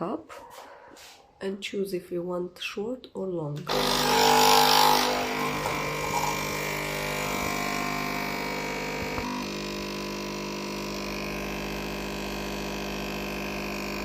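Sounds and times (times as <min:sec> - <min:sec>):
coffee machine pump humming: 0:03.7 - 0:14.0.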